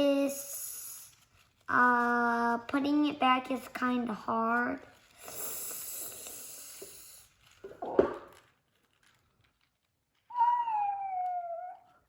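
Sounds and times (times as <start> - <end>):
high drawn-out cry: 10.3 - 11.8.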